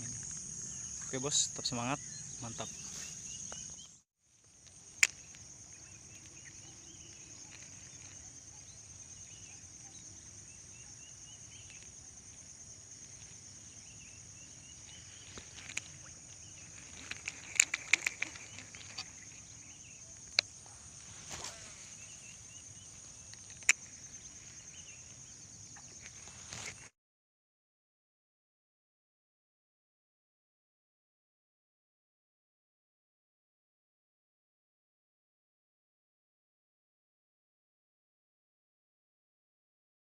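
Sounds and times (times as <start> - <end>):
bird chirps: 0.0 - 4.0, 4.8 - 26.9
insect chorus drone: 0.0 - 26.9.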